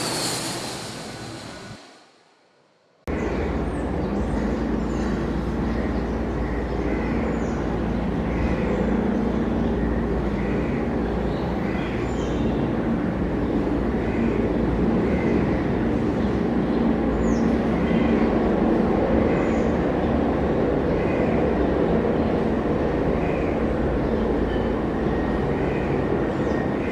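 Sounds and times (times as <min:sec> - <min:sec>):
low rumble and hiss: 0:00.0 - 0:02.7.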